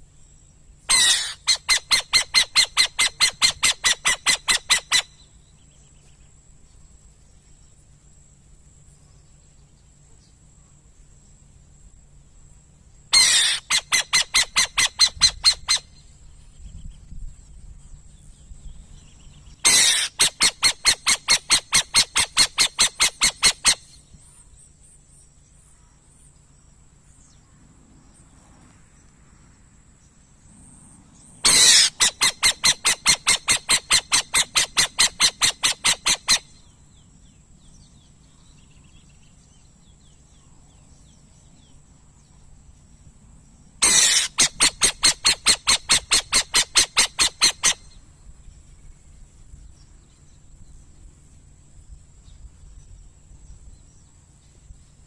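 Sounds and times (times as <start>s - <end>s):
owl calling pulsed notes: 0.9s - 5.4s, 13.2s - 16.1s, 31.5s - 36.8s.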